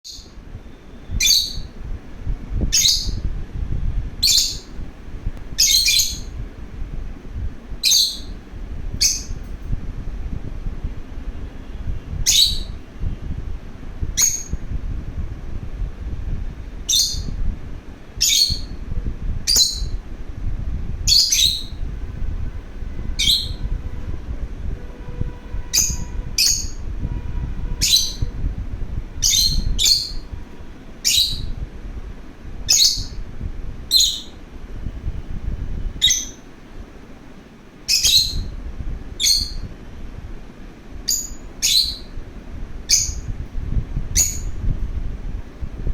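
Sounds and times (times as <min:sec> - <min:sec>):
lovebird shrill chirps: 0:00.1 - 0:01.8, 0:02.7 - 0:03.2, 0:04.2 - 0:04.7, 0:05.6 - 0:06.3, 0:07.8 - 0:08.4, 0:09.0 - 0:09.4, 0:12.2 - 0:12.8, 0:14.2 - 0:14.6, 0:16.9 - 0:17.4, 0:18.2 - 0:18.8, 0:21.1 - 0:21.8, 0:23.2 - 0:23.6, 0:25.7 - 0:26.8, 0:27.8 - 0:28.3, 0:29.2 - 0:30.2, 0:31.0 - 0:31.5, 0:33.9 - 0:34.4, 0:36.0 - 0:36.4, 0:37.9 - 0:38.5, 0:39.2 - 0:39.6, 0:41.1 - 0:42.1, 0:42.9 - 0:43.3, 0:44.2 - 0:44.6
low rumble: 0:01.6 - 0:36.9.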